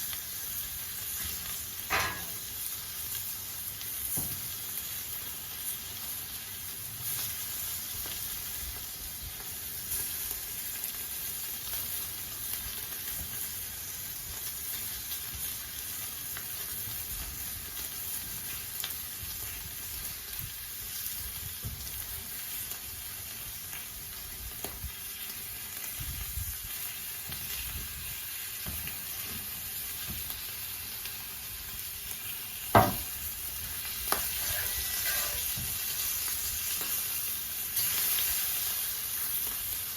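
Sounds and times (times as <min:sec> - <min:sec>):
sausages sizzling in oil: 0:00.0 - 0:39.9
short sharp knocks: 0:32.8 - 0:33.1.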